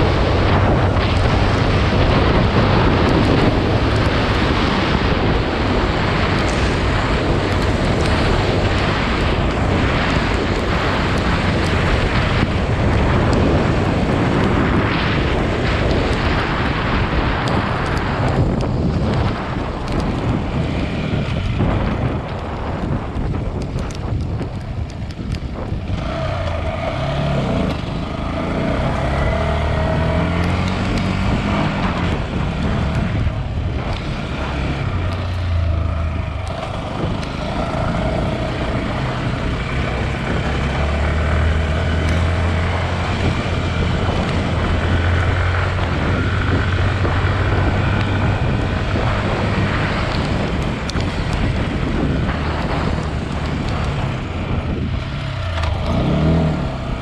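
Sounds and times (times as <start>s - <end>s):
motorcycle engine revving: 25.3s - 57.0s.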